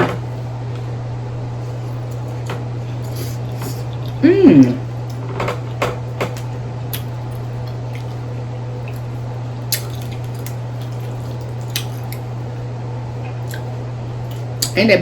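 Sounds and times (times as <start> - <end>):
steady low hum: 0.0 - 15.0
wet squishing: 3.0 - 5.2, 6.4 - 12.4, 13.4 - 14.8.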